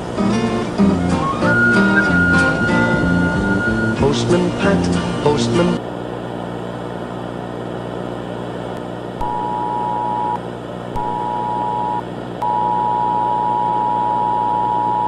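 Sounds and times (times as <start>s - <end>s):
hiss and buzzing hum: 0.0s - 15.0s
high alert tone beep: 9.2s - 10.4s, 11.0s - 15.0s.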